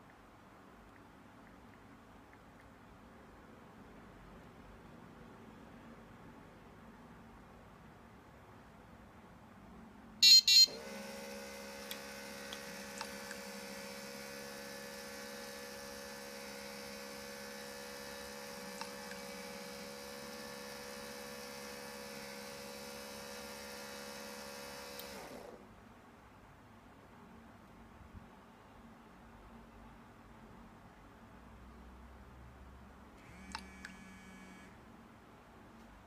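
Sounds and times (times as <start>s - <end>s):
short electronic beeps: 10.2s - 10.8s
garage door motor humming: 10.2s - 25.6s, 33.2s - 34.8s.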